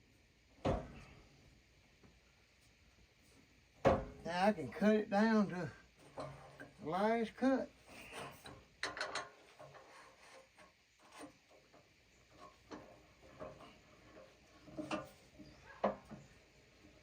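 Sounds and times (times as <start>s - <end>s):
light knocks and scrapes: 6.0s - 6.8s, 7.8s - 16.4s.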